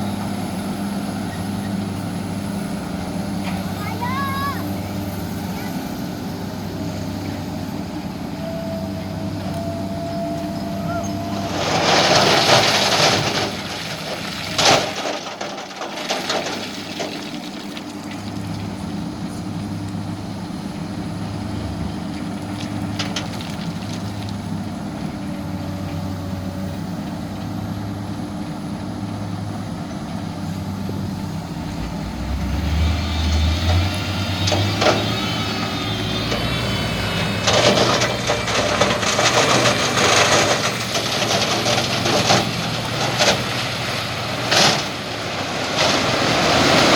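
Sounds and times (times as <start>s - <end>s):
diesel excavator engine humming: 0.0s - 46.9s
loud rushes of noise: 8.8s - 14.6s, 30.5s - 42.3s.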